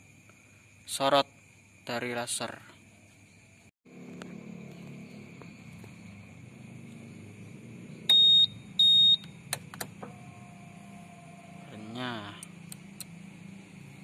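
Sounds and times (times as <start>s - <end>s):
faint steady hum: 2.7s - 14.0s
high electronic beeps: 8.1s - 9.3s
sharp clicks: 9.2s - 10.0s, 12.4s - 13.2s.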